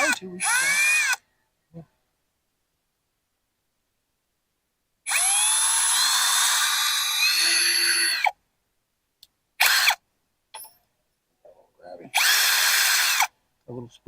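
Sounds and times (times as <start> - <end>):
electric drill whining: 5.1 - 8.3, 9.6 - 10.0, 12.1 - 13.3.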